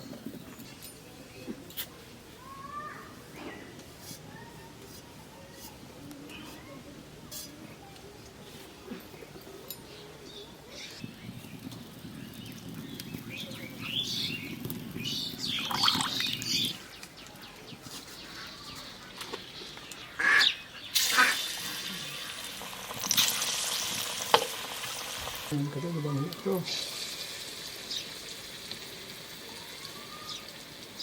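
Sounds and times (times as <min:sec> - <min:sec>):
hot oil sizzling: 0:20.9 - 0:31.0.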